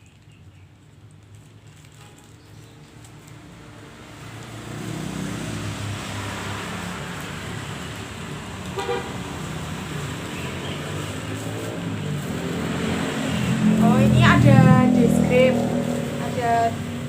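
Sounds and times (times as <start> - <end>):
road traffic going by: 0.0 - 17.0
vehicle engine: 0.8 - 17.0
vehicle horn toot: 8.8 - 9.2.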